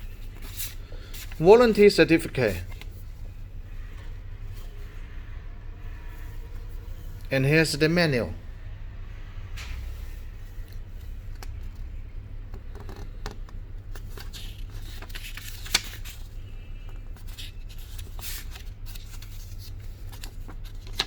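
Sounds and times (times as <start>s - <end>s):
paper pages rustling: 0.0s - 3.3s, 13.8s - 21.0s.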